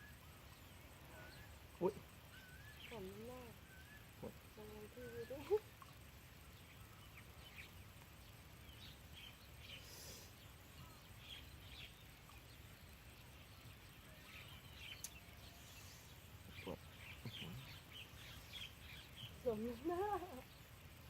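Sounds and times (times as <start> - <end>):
bird chirps: 0.0 - 5.6
low steady background noise: 0.0 - 21.0.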